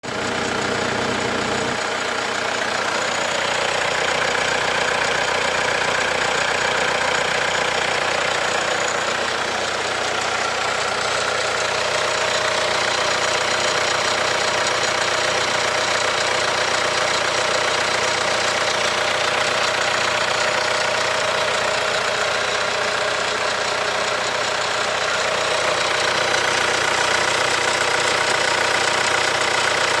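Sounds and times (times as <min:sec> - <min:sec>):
diesel engine running: 0:00.0 - 0:30.0.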